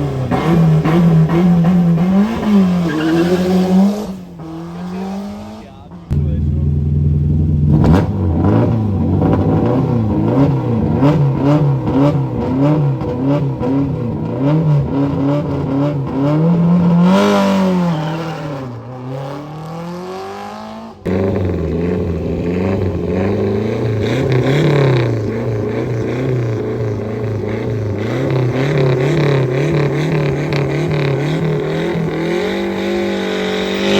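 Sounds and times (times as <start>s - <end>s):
car accelerating away: 0.0s - 33.9s
rally car engine revving: 0.0s - 33.9s.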